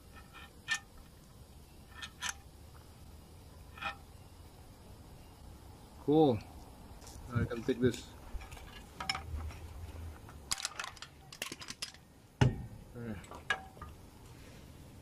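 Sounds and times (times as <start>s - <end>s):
metal parts clinking: 1.9s - 2.4s, 10.5s - 12.0s.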